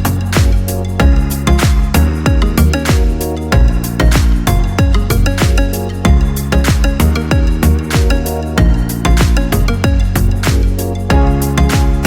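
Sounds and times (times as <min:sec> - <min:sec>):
hi-hats: 0:00.0 - 0:12.0
kick drums: 0:00.0 - 0:12.0
sustained synth chords: 0:06.0 - 0:12.0.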